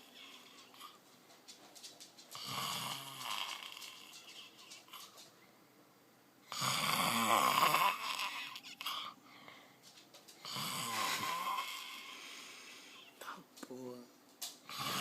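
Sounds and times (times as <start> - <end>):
loud snoring: 2.3 - 4.4, 6.5 - 9.2, 10.4 - 12.6, 14.7 - 15.0
quiet breathing: 8.0 - 13.5.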